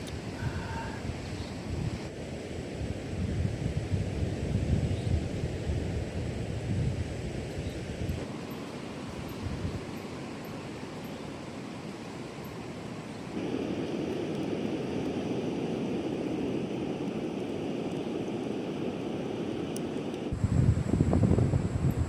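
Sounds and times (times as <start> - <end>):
strong wind: 0.0 - 22.0
sea surf: 8.2 - 20.4.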